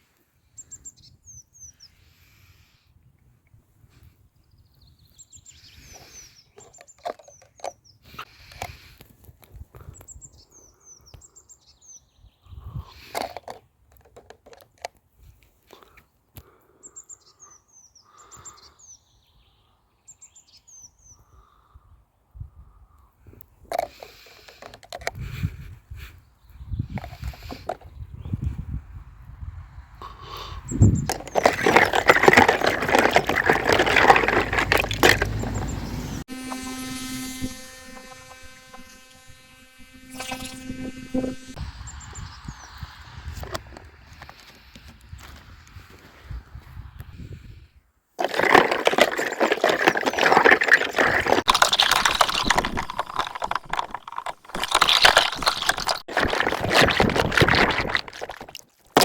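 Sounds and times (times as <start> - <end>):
water bubbling and crackling: 30.6 - 38.9, 48.2 - 59.0
steady electric buzz: 35.2 - 41.7.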